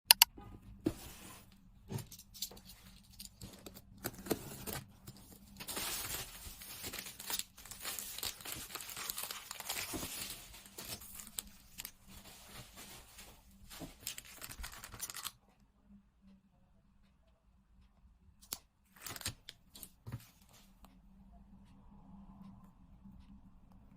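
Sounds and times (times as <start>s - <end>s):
clicks: 0.0s - 0.4s
packaging tearing and crinkling: 4.1s - 12.3s, 13.8s - 15.4s.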